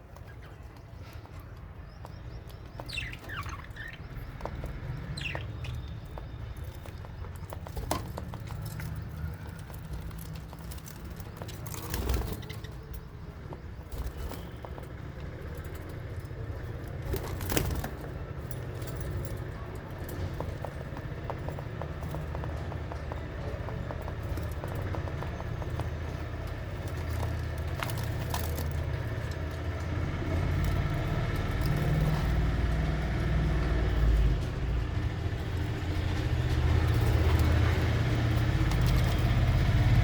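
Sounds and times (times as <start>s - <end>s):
parrots chirping: 2.4s - 6.4s.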